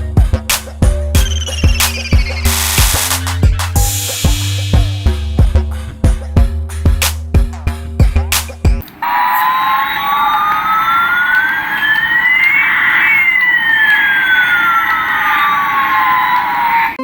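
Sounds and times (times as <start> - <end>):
electronic siren-like sweep: 1.2 - 4.1, 8.8 - 17.0
hiss: 2.5 - 5.1
fainter second tone: 8.8 - 17.0.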